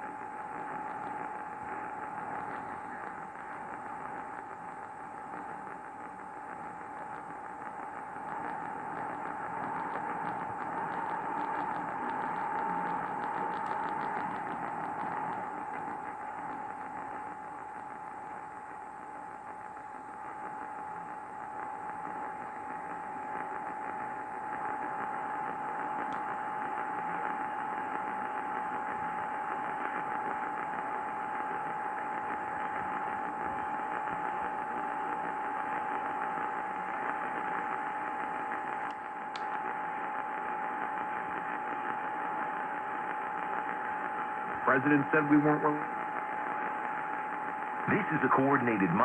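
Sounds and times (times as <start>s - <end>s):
radio hiss: 0.0s - 49.0s
faint clicks: 10.2s - 15.9s.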